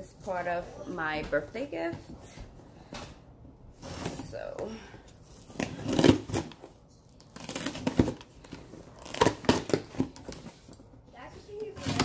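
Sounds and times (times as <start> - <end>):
packaging crinkling and tearing: 5.4 - 10.8.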